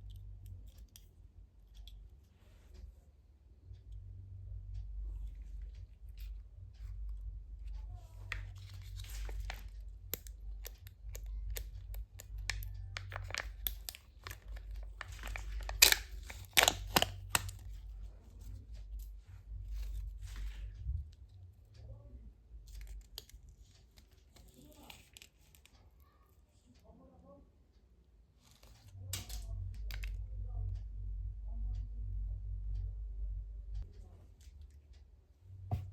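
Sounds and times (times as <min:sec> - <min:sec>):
plastic packaging tearing: 0:12.5 - 0:17.6.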